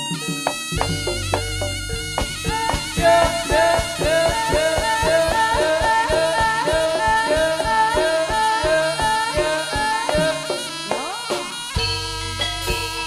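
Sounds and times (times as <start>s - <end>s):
reedy wind instrument melody: 0.0s - 13.0s
steady drum beat: 0.0s - 13.0s.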